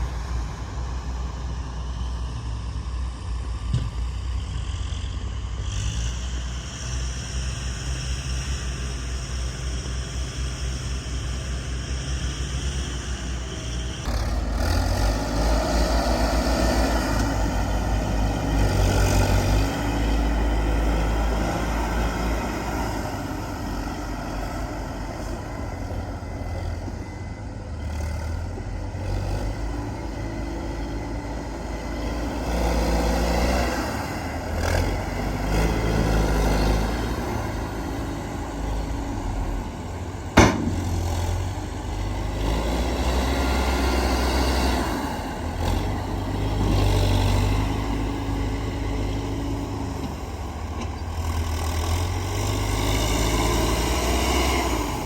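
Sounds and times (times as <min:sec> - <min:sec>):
heavy diesel machinery running: 0:00.0 - 0:55.0
sharp metal clank: 0:40.4 - 0:41.4.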